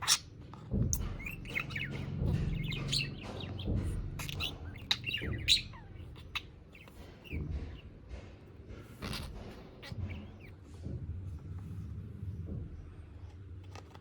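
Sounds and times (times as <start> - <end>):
budgerigar chirping: 0.0 - 0.3, 0.9 - 7.8, 9.0 - 10.5.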